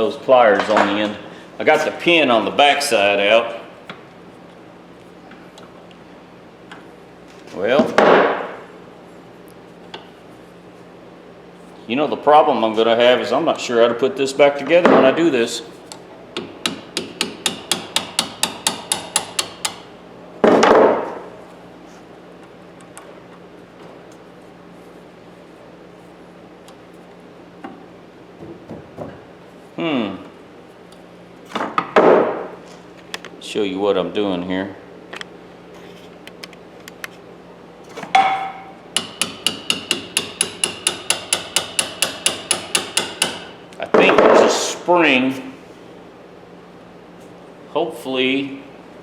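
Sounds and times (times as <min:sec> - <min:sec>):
hammer striking metal punch: 0:16.4 - 0:19.8, 0:38.1 - 0:43.5.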